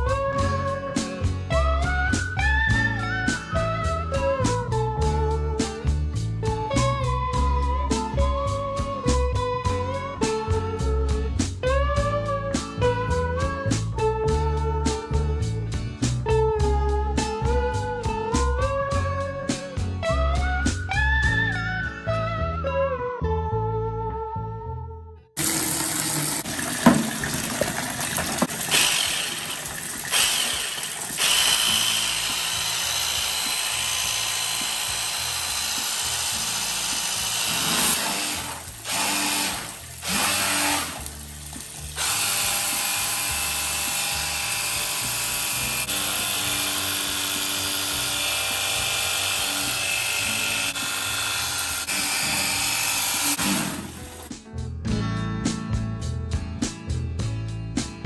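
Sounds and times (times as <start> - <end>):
pressure washer spraying water: 27.9 - 54.3.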